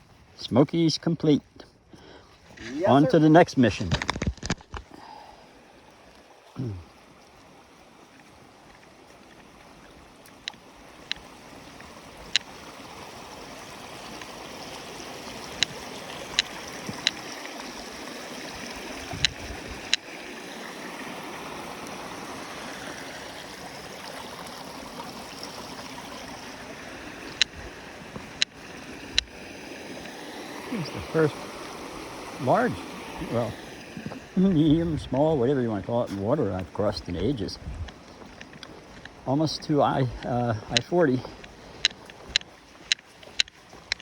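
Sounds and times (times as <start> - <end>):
rushing mountain stream: 0.0 - 44.0
sharp clicks: 41.8 - 44.0.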